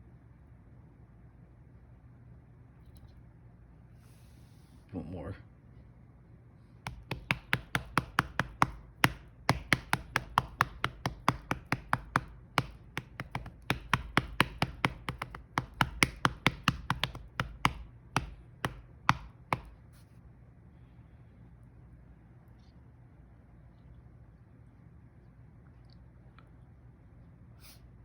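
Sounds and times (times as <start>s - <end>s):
hand patting cat's belly: 6.9s - 20.0s.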